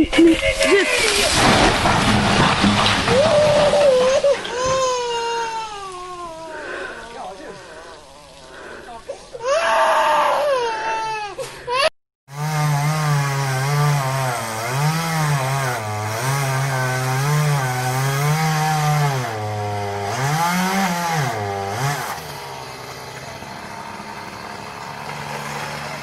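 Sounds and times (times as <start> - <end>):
chainsaw engine running: 12.3 - 26.0.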